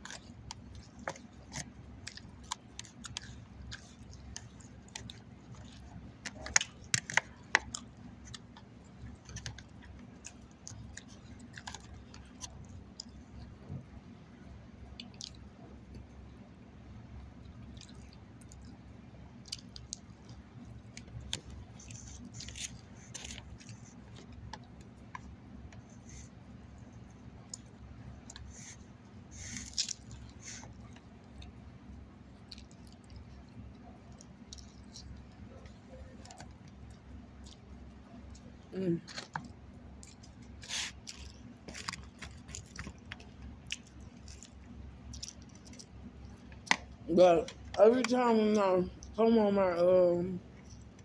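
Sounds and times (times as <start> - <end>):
person chewing food: 0.0 - 16.3, 17.2 - 47.8, 50.4 - 51.0.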